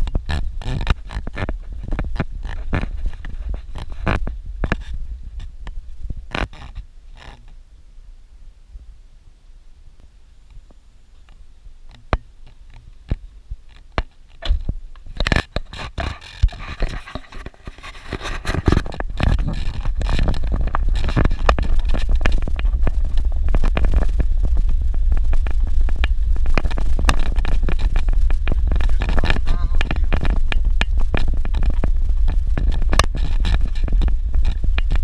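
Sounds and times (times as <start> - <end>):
vehicle driving on dirt road: 10.6 - 35.0
scattered clicks: 11.2 - 35.0.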